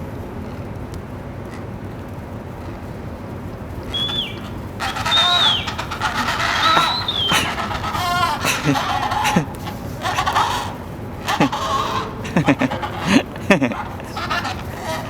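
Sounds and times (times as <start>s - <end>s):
penguins braying calls: 3.6s - 15.0s
person whistling gliding notes: 3.9s - 5.8s, 6.6s - 7.6s.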